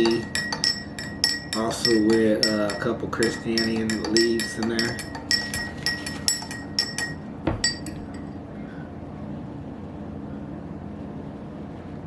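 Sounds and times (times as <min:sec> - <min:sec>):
spoon knocking cup: 0:00.0 - 0:08.2
metal spoon clinking against cup: 0:00.0 - 0:08.3
low steady hum: 0:00.0 - 0:12.0.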